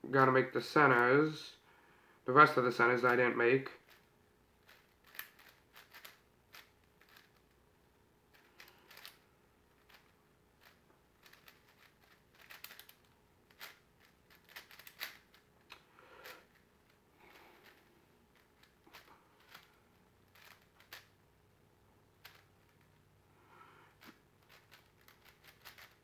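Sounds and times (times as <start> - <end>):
puzzle cube plastic clicking: 4.6 - 7.6, 8.3 - 9.2, 9.8 - 21.1, 22.2 - 23.0, 24.0 - 26.0.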